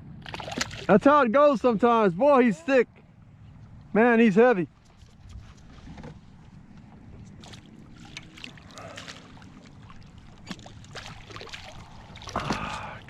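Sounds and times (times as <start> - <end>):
shallow water splashing: 0.2 - 1.1, 4.7 - 13.0.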